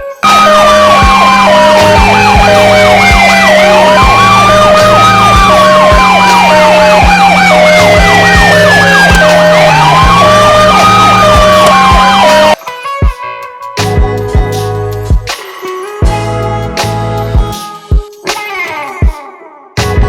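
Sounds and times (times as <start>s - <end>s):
siren wailing: 0.0s - 12.6s
siren yelping: 0.0s - 12.6s
low thumping: 1.0s - 12.3s.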